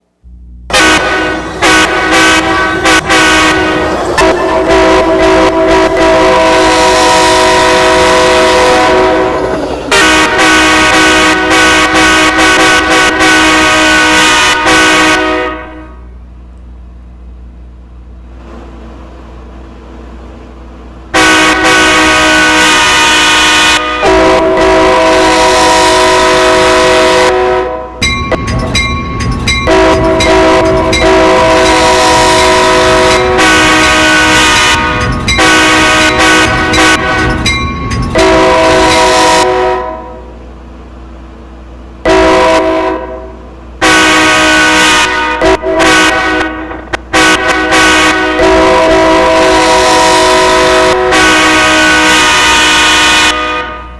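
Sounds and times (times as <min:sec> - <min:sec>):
low hum: 0:00.0 - 0:09.9
train air horn blasts: 0:00.3 - 0:16.2, 0:21.1 - 0:28.0, 0:29.6 - 0:40.4, 0:42.0 - 0:53.9
clicking clatter: 0:28.0 - 0:31.0, 0:34.8 - 0:35.4, 0:36.5 - 0:38.2.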